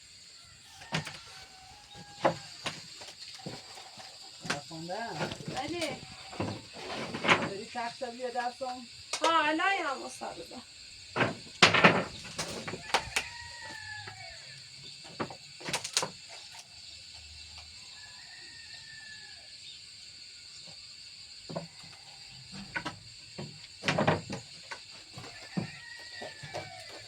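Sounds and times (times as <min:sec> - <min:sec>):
crickets chirring: 0:00.0 - 0:27.0
sharp knocks and clatters: 0:11.2 - 0:13.2, 0:22.5 - 0:27.0.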